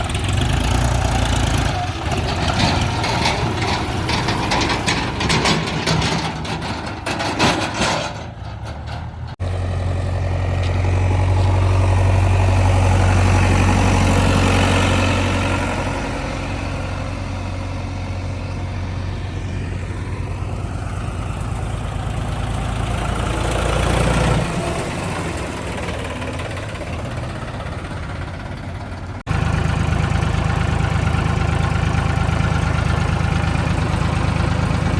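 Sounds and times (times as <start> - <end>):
diesel machinery engines running: 0.0 - 34.9
clattering knocks: 2.4 - 9.4.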